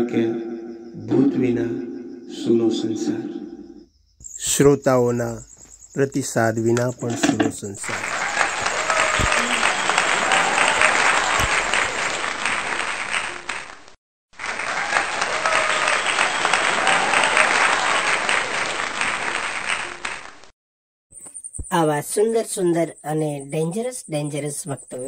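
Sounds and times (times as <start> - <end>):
crowd applauding: 7.8 - 20.5.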